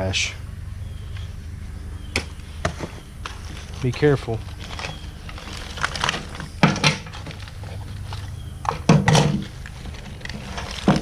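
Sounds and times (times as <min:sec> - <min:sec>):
steady low hum: 0:00.0 - 0:11.0
objects knocking and clunking: 0:02.1 - 0:11.0.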